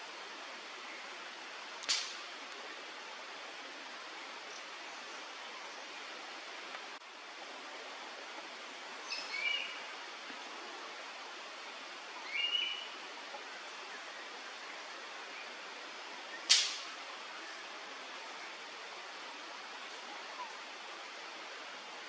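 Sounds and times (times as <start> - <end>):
steady hiss: 0.0 - 22.0
cuckoo whistled calls: 12.2 - 13.0.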